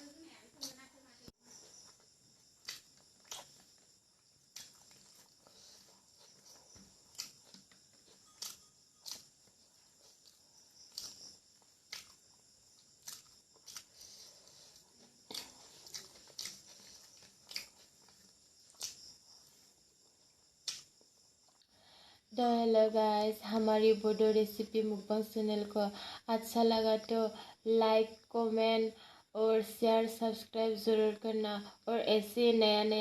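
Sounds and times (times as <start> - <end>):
person chewing and mouth smacking: 1.5 - 19.6, 20.3 - 21.6.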